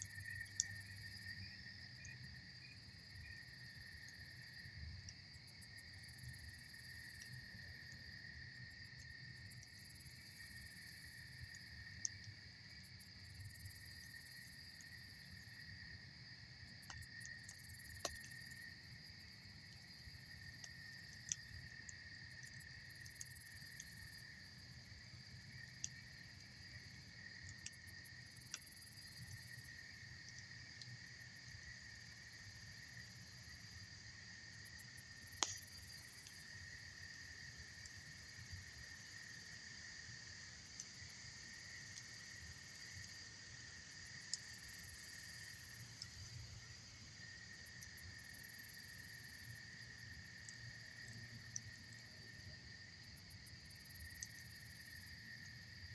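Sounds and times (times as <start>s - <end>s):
crickets chirring: 0.0s - 55.9s
campfire crackling: 16.6s - 31.2s, 34.7s - 38.9s.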